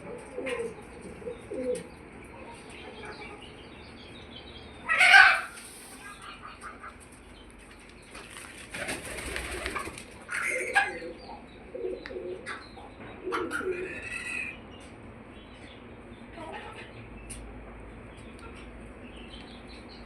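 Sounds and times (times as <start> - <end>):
hen clucking: 0.0 - 20.0
rustling movement: 7.1 - 10.2.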